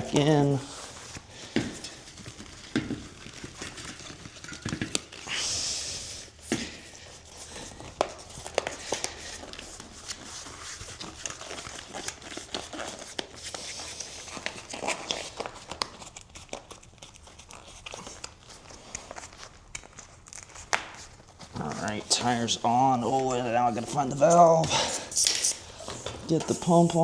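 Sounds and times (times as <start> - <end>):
rubbery rubbing and rustling: 0.0 - 27.0.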